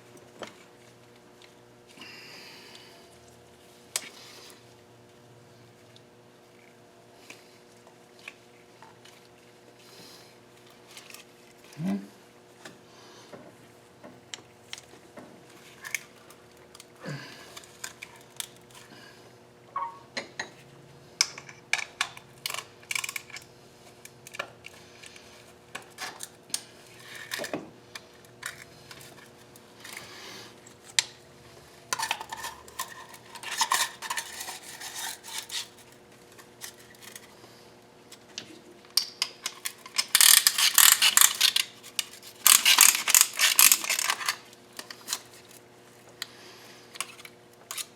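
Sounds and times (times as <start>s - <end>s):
metal tools clinking: 39.9s - 44.4s.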